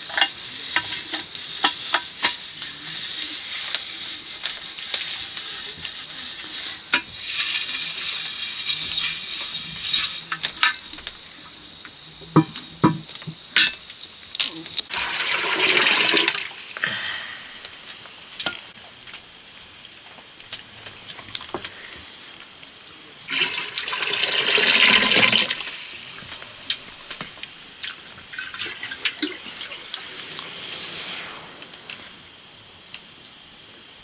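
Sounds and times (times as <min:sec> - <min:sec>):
water pouring and splashing: 0:14.4 - 0:18.8, 0:23.2 - 0:33.7.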